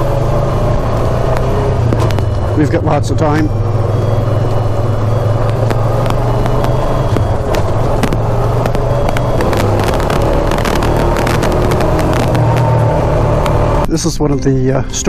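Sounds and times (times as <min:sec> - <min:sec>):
atv engine running: 0:00.0 - 0:13.9
sharp clicks and knocks: 0:01.3 - 0:02.4, 0:05.2 - 0:13.6.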